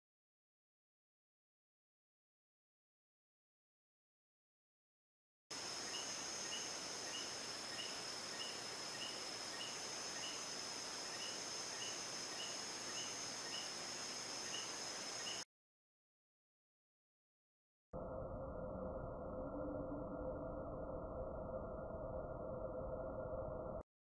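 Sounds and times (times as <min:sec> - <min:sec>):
insects droning: 0:05.5 - 0:15.4
short chirping insect call: 0:05.5 - 0:15.5.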